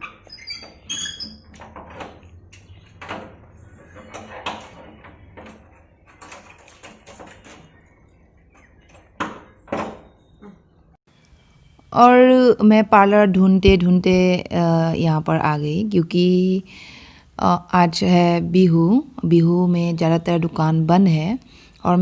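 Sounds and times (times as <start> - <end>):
high squeaks: 0.0 - 3.0
knocks and clatters: 0.0 - 10.7.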